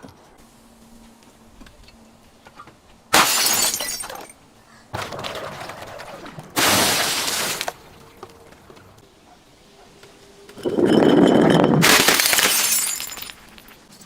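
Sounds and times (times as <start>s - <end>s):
glass shattering: 3.1s - 4.4s, 6.6s - 7.8s, 10.6s - 13.8s.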